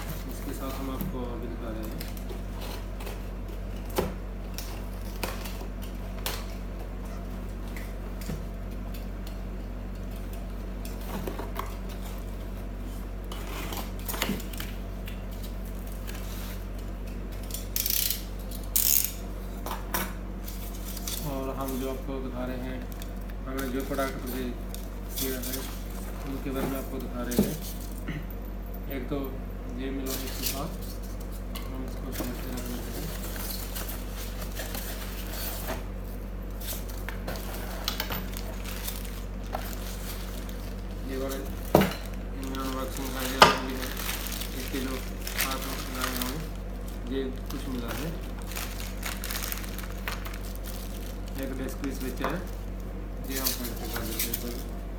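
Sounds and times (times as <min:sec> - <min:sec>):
low electrical hum: 0:00.0 - 0:54.9
packaging clicks and rustles: 0:36.6 - 0:52.6.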